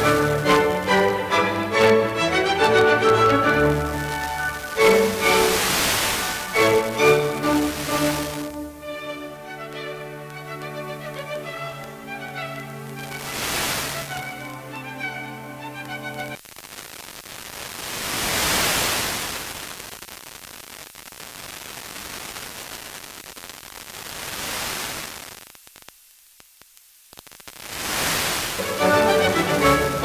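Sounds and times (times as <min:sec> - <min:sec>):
classical music on radio: 0:00.0 - 0:17.8, 0:27.3 - 0:30.0
radio static hiss: 0:00.0 - 0:30.0.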